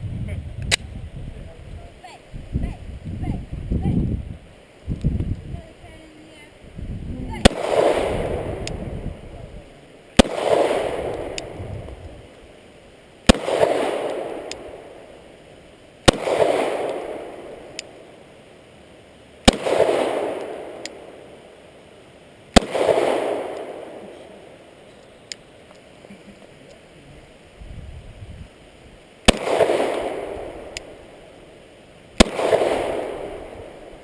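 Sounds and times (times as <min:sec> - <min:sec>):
pistol shots with echo: 0:07.4 - 0:09.2, 0:10.2 - 0:11.6, 0:13.3 - 0:15.0, 0:16.0 - 0:18.0, 0:19.5 - 0:21.2, 0:22.5 - 0:24.1, 0:29.3 - 0:31.0, 0:32.2 - 0:33.8.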